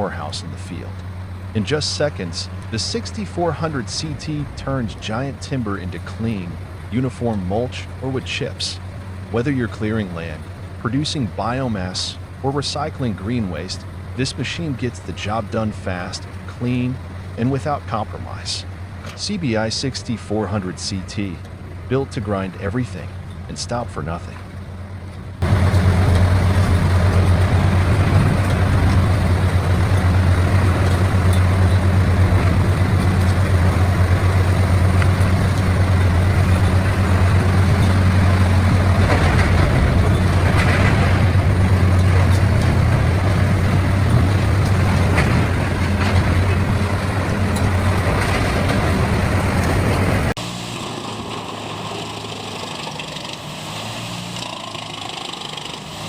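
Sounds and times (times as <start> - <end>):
machine engine running: 0.0 - 56.0
horizontal grinder running: 50.4 - 56.0.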